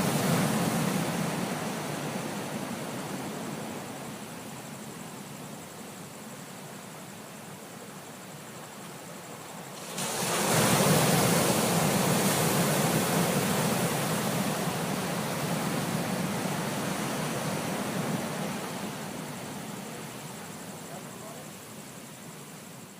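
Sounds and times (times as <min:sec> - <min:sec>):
ocean wave breaking: 0:00.0 - 0:04.2, 0:09.8 - 0:20.9
surf washing in: 0:00.0 - 0:22.9.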